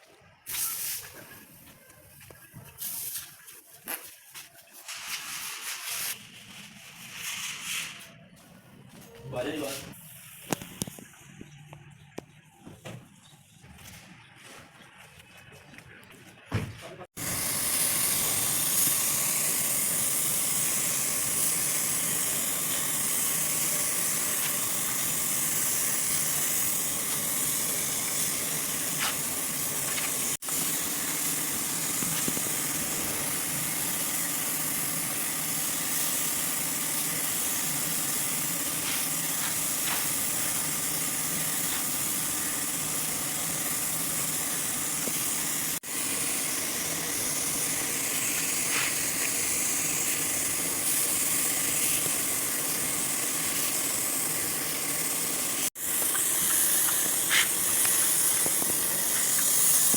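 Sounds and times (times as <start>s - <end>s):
spray nozzle hissing: 17.2s - 59.9s.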